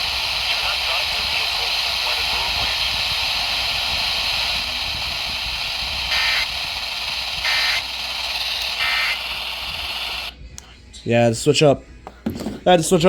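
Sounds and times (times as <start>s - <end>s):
buzzy data bursts: 0.0s - 10.4s
radio static hiss: 0.0s - 10.4s.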